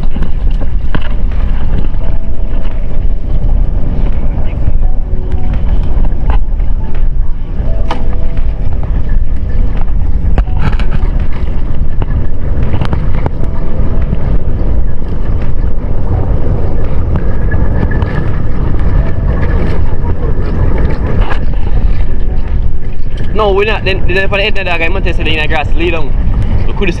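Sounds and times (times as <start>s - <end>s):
motorboat engine rumbling: 0.0s - 27.0s
wind buffeting microphone: 0.0s - 27.0s.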